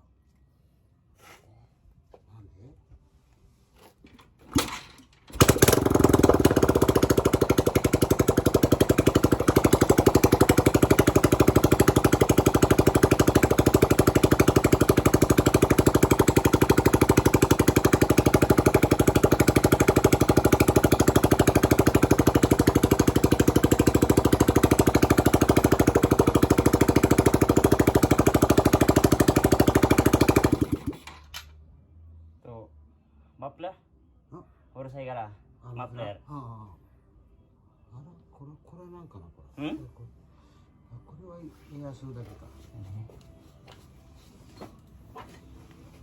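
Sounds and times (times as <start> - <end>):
motorcycle engine running: 5.4 - 31.1.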